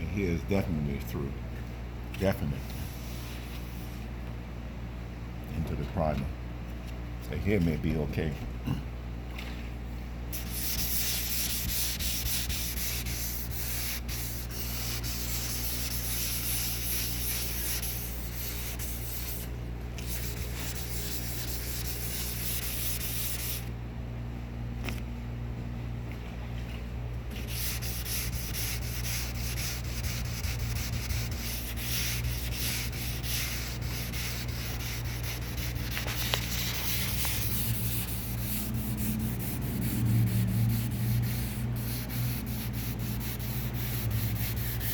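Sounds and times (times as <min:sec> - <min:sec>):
sanding painted car panel: 0:10.4 - 0:23.7, 0:27.4 - 0:44.9.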